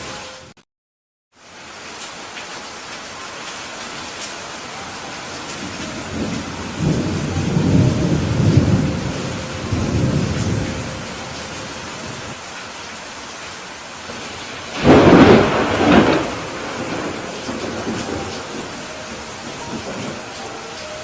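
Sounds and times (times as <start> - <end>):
heavy rain falling: 1.3 - 21.0
thunder rumbling: 5.1 - 12.4, 14.1 - 21.0.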